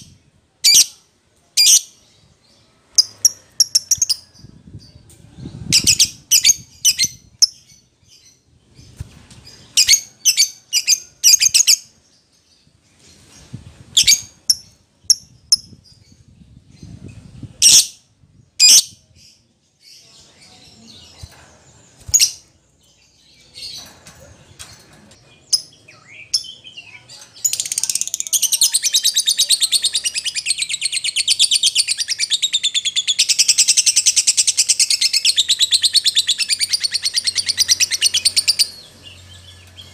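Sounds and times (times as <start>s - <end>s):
lovebird chirping and trilling: 2.9s - 11.9s, 13.2s - 19.3s, 22.0s - 22.5s, 25.4s - 39.9s.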